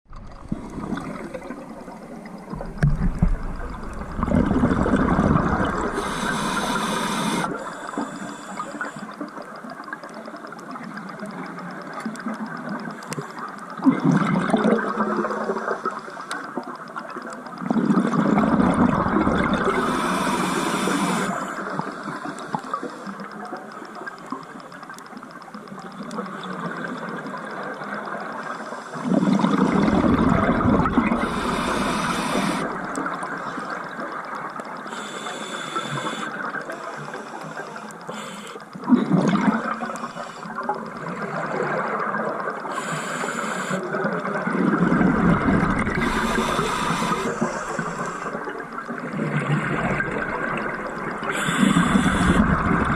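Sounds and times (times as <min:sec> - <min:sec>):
exhaled bubbles rushing: 0:00.1 - 0:06.5, 0:17.6 - 0:19.9, 0:29.0 - 0:34.4, 0:38.9 - 0:39.9, 0:44.0 - 0:52.9
underwater hiss: 0:00.7 - 0:09.2, 0:19.1 - 0:23.1, 0:28.5 - 0:33.7, 0:34.8 - 0:38.6, 0:39.3 - 0:40.6, 0:42.6 - 0:44.0, 0:45.3 - 0:52.9.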